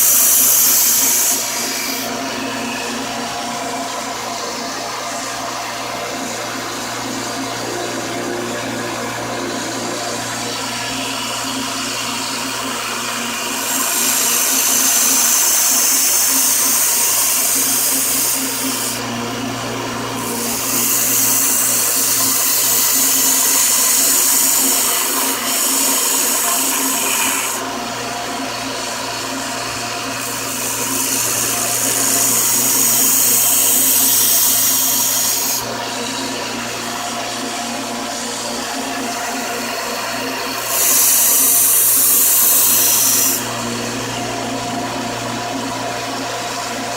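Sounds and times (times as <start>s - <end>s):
power tool running: 0.0s - 46.9s
knife blade grinding: 20.2s - 27.7s, 30.2s - 39.6s.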